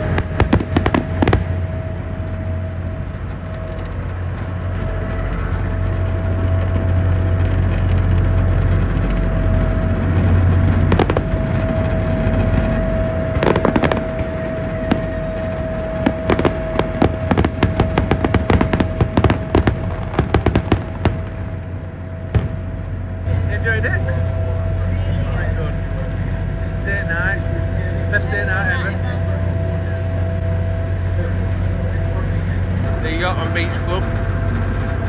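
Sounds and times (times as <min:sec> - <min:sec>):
sharp crackling pops: 0:00.0 - 0:24.8
boat engine humming: 0:00.0 - 0:35.0
thin constant whine: 0:00.0 - 0:35.0.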